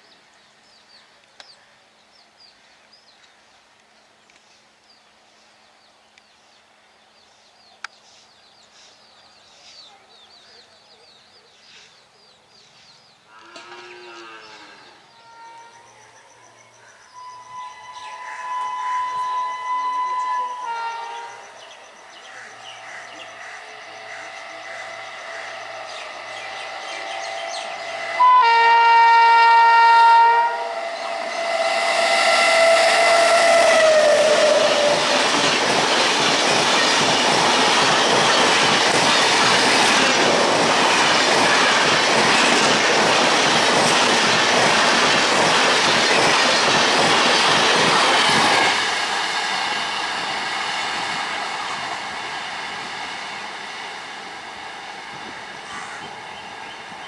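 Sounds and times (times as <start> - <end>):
train horn blast: 13.3 - 16.1, 17.1 - 21.8, 22.5 - 35.4
train wheels and coaches passing: 15.2 - 57.0.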